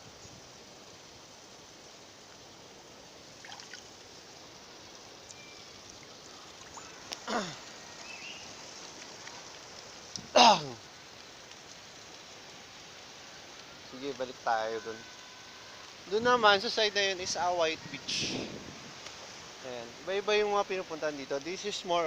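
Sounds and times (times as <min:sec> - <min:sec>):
sea water trickling among rocks: 0:00.8 - 0:17.2.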